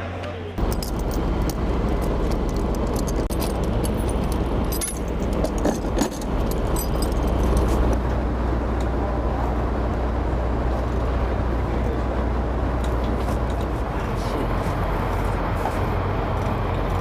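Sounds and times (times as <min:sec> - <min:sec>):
low running hum: 0:00.0 - 0:17.0
light metallic clinks: 0:00.6 - 0:07.7.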